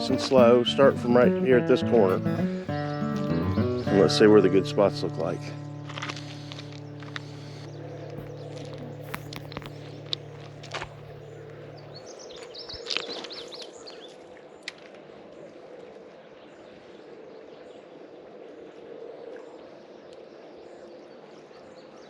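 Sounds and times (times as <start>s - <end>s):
creek rushing: 0.0s - 12.0s
bird chirps: 0.0s - 14.0s
low hum: 2.5s - 12.0s.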